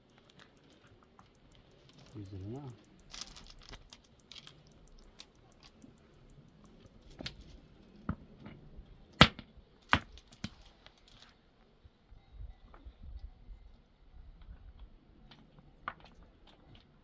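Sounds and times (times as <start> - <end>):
sharp knocks and clicks: 0.0 - 7.5.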